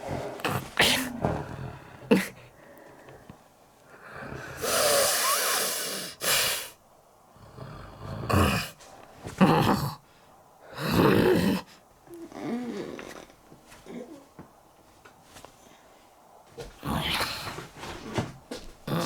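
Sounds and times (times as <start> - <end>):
comic snoring voice: 0.3 - 2.4, 4.0 - 6.7, 7.4 - 8.8, 10.7 - 13.3.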